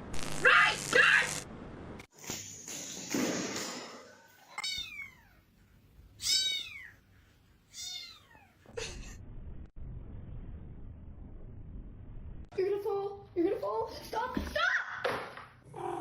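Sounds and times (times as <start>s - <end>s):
cat meowing: 4.5s - 5.4s, 6.2s - 7.0s, 7.7s - 8.6s.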